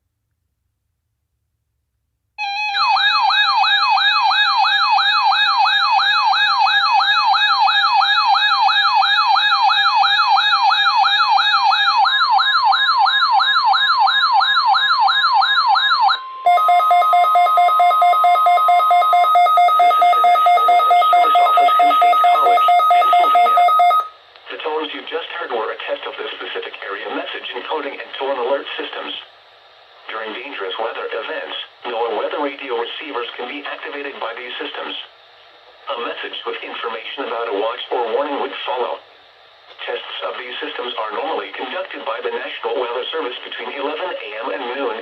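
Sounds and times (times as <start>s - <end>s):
pulsing two-note alarm tone: 2.4s - 24.1s
warbling alert tone: 16.5s - 24.1s.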